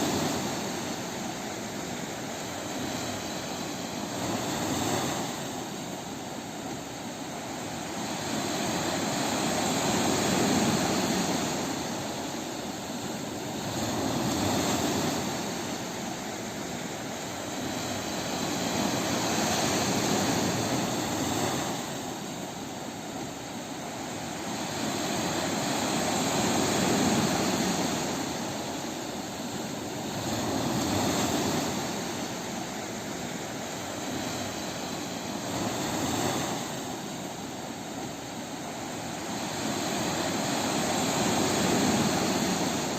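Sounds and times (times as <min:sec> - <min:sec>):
ocean waves on a beach: 0:00.0 - 0:42.9.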